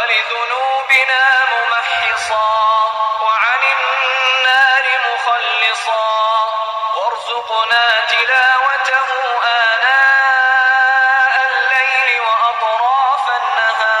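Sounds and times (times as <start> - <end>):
man chanting ringtone: 0.0 - 14.0.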